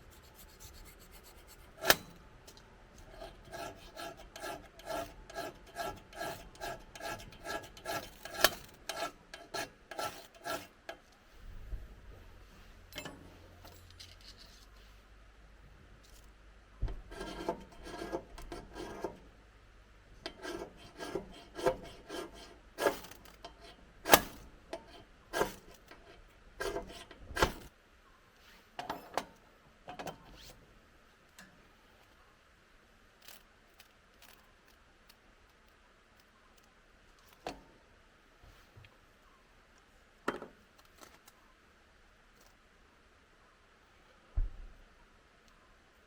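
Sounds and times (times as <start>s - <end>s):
rasping rubbing strokes: 0.0s - 2.2s, 3.0s - 10.8s.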